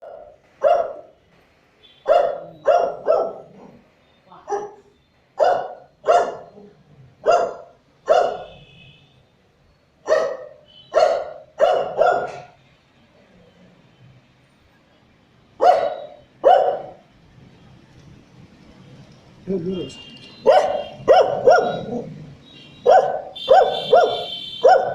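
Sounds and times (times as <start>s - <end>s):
dog barking: 0.0s - 1.2s, 2.0s - 3.8s, 4.4s - 8.6s, 10.0s - 12.6s, 15.6s - 17.0s, 20.4s - 22.2s, 22.8s - 24.9s.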